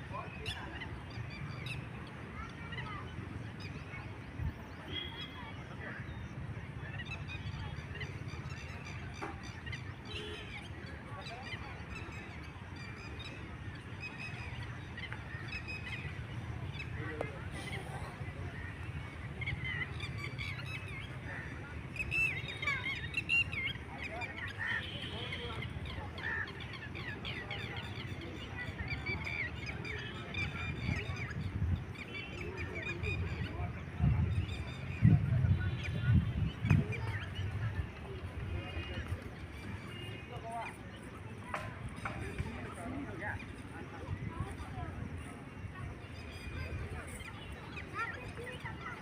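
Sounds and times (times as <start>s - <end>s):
waterbirds calling: 0.0s - 49.0s.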